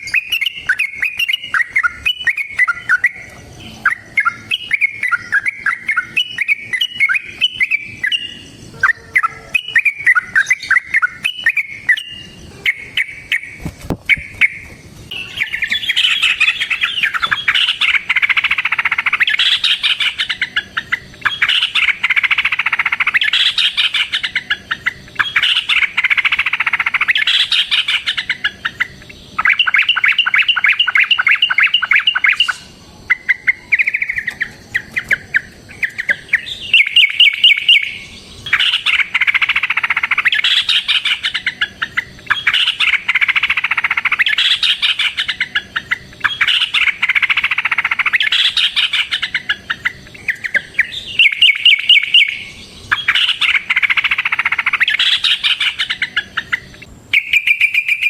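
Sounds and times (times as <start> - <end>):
bulbul singing chirps and trills: 0.0 - 58.0.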